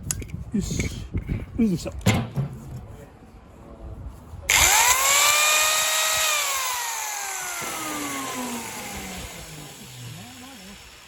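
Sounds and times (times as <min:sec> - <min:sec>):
electric sander motor whining: 0:04.5 - 0:11.0.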